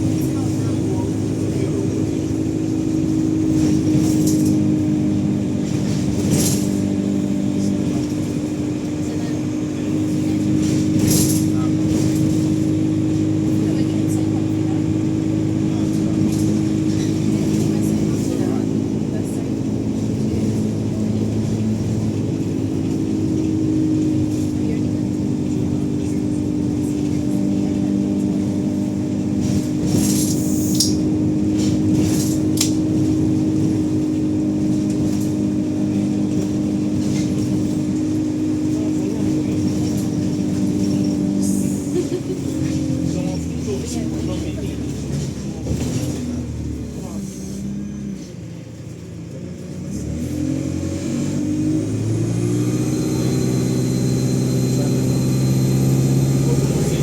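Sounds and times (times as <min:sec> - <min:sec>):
bus engine drone: 0:00.0 - 0:57.0
turbocharger whine: 0:49.5 - 0:57.0.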